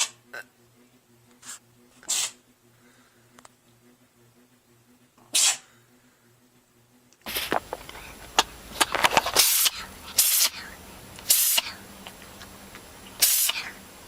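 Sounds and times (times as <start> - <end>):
animal sneezing: 1.4 - 2.4, 5.3 - 5.7, 9.4 - 11.8, 13.2 - 13.8.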